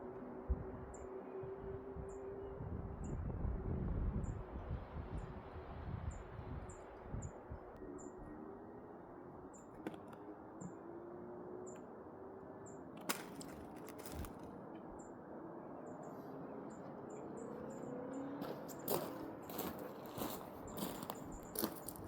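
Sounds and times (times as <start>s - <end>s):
small birds chirping: 9.4s - 22.0s.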